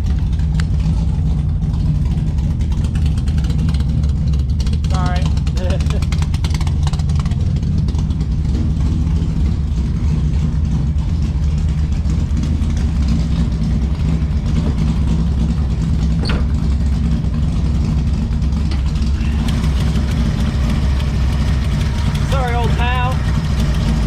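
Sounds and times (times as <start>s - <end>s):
engine idling: 0.0s - 24.0s.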